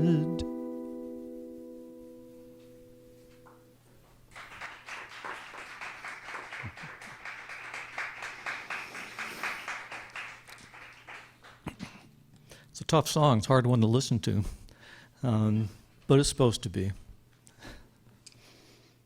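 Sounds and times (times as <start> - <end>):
acoustic guitar chord ringing: 0.0 - 3.8
applause: 4.2 - 12.0.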